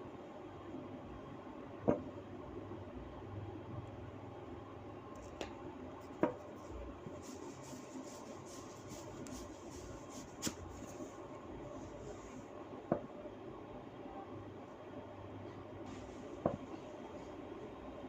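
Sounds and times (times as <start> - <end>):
hands scratching through hair: 7.1 - 11.2.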